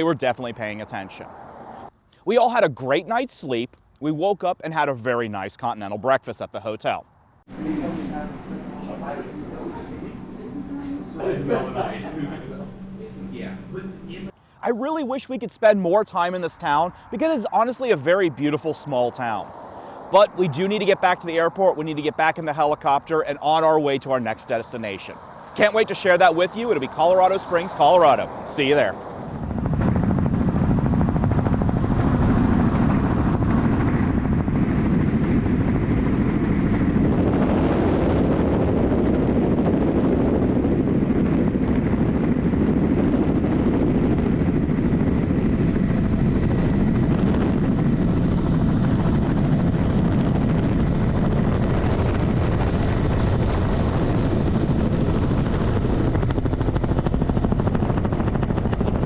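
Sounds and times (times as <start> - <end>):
helicopter rotor and engine: 7.5 - 15.3, 15.9 - 59.0.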